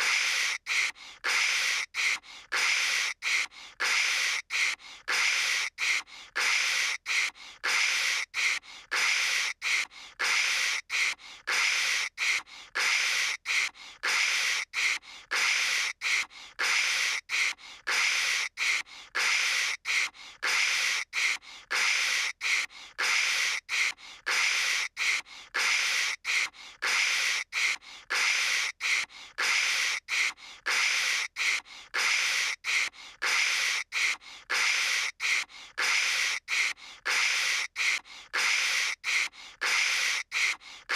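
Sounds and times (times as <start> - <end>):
girl's voice making hissing bursts: 0.0 - 40.9.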